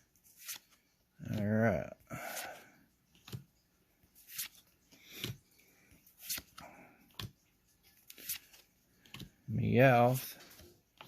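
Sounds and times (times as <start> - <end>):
trading cards swishing: 4.2 - 5.4, 6.1 - 6.6, 8.0 - 9.3.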